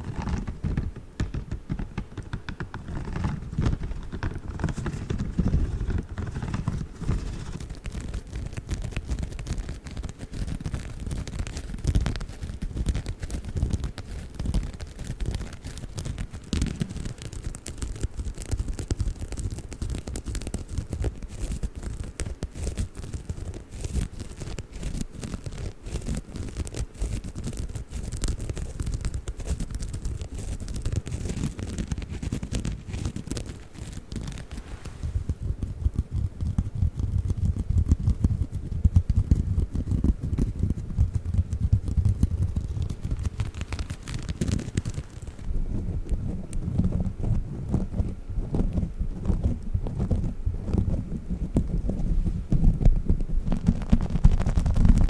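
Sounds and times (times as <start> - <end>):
sponge scrubbing: 31.5 - 35.5.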